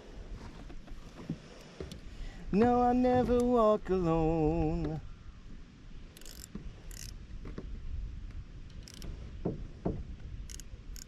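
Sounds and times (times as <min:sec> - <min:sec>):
fishing reel ratchet clicking: 0:06.2 - 0:07.2, 0:08.7 - 0:09.1, 0:10.5 - 0:11.0
soft knocks: 0:09.4 - 0:10.1.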